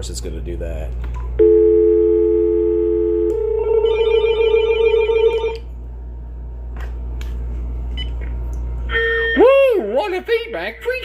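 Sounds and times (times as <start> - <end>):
telephone dial tone: 1.4 - 5.6
warbling electronic phone ring: 1.4 - 5.6.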